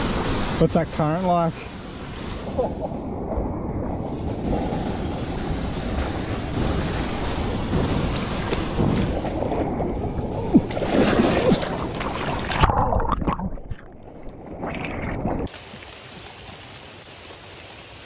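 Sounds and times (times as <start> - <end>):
creek water rushing: 0.0 - 2.5, 15.5 - 18.0
wind on microphone: 1.6 - 16.9
high insect drone: 15.5 - 18.0.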